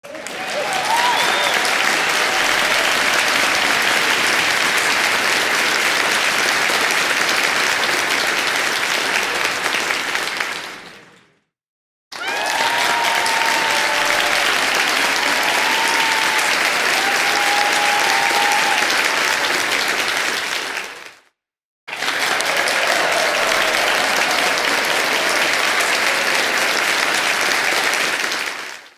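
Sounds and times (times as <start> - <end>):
crowd cheering: 0.0 - 7.0, 12.1 - 21.1, 21.9 - 28.8
crowd clapping: 0.0 - 11.3, 12.1 - 21.3, 21.9 - 28.9
whistles: 0.7 - 1.9
people shouting: 12.2 - 18.8.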